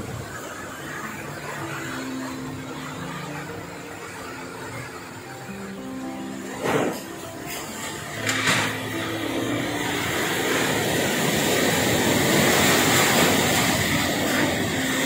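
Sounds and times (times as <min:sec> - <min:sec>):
strong wind: 0:00.0 - 0:01.4, 0:08.7 - 0:15.0
heavy rain: 0:00.0 - 0:15.0.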